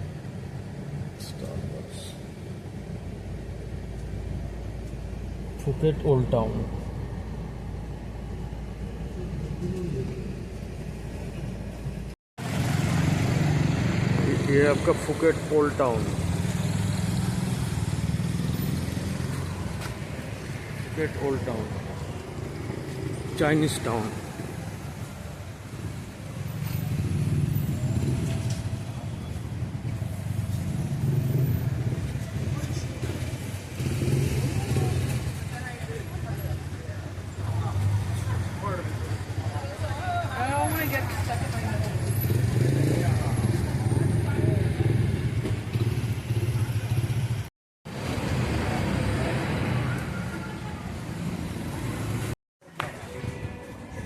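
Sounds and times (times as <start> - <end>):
cars passing: 0.0 - 54.0
low traffic rumble: 0.0 - 54.0
street noise: 0.0 - 54.0
vehicle engine passing: 12.4 - 25.0, 40.7 - 50.3.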